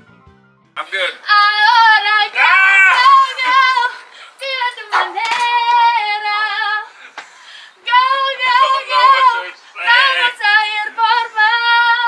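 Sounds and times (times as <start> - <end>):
high voice singing: 0.8 - 7.2.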